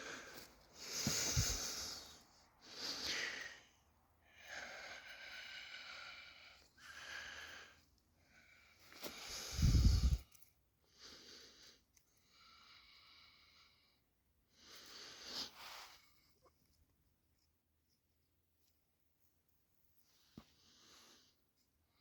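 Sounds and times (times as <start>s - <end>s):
man breathing heavily: 0.0s - 10.2s.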